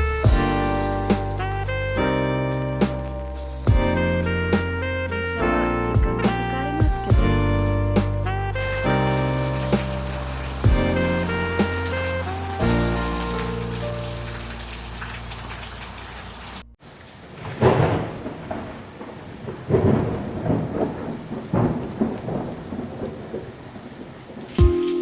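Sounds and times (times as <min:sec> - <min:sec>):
thunder rumbling: 0:08.6 - 0:15.1, 0:17.2 - 0:25.0
rain falling: 0:08.6 - 0:25.0.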